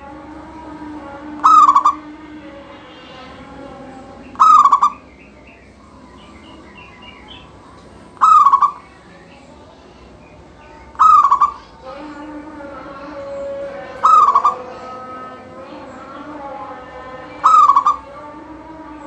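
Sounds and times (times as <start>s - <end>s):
faint high bird chirps: 1.4s - 2.0s, 4.2s - 12.0s, 13.2s - 15.2s, 17.3s - 18.1s
dove cooing calls: 1.4s - 2.2s, 4.1s - 7.6s, 8.2s - 9.0s, 10.9s - 11.7s, 13.9s - 14.9s, 17.3s - 18.2s.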